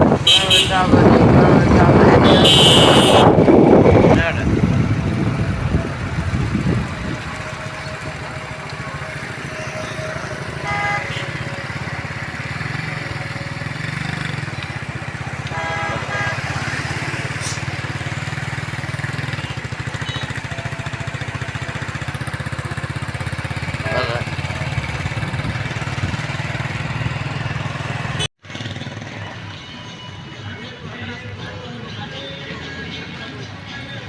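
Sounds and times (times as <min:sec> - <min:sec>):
horn honks: 0:00.1 - 0:01.4, 0:02.0 - 0:03.5, 0:07.0 - 0:14.5, 0:15.1 - 0:24.8.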